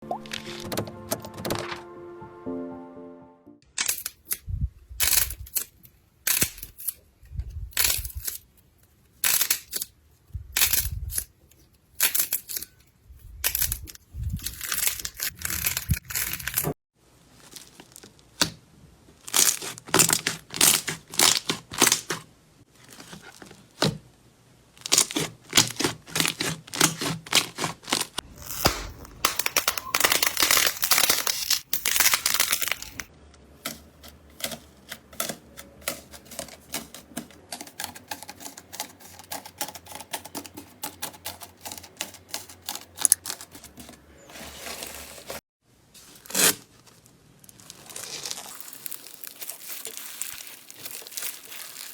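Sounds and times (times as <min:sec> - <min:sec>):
slime crackling and popping: 0:24.8 - 0:33.1, 0:47.4 - 0:51.9.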